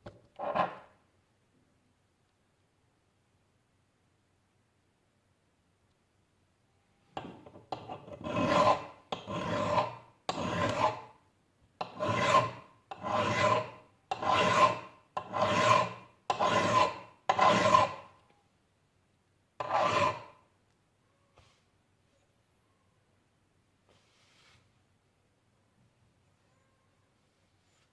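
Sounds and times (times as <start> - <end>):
metal file scraping steel: 7.7 - 11.1, 11.8 - 18.1, 19.6 - 20.4.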